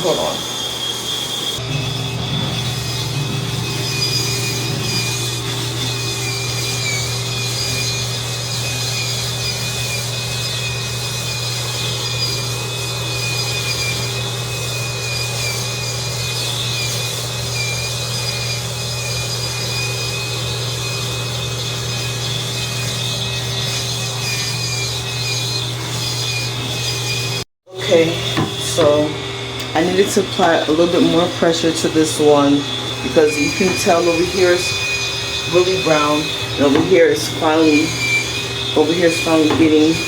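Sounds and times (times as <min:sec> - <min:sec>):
spin scrubber motor whine: 0:00.0 - 0:40.0
bristles rubbing: 0:22.5 - 0:40.0.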